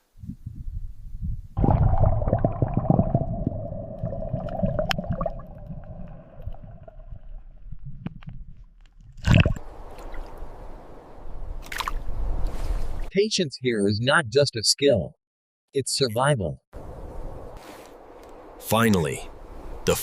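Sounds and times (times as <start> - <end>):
low rumble: 0.4 - 9.3
water gurgling: 1.6 - 8.1.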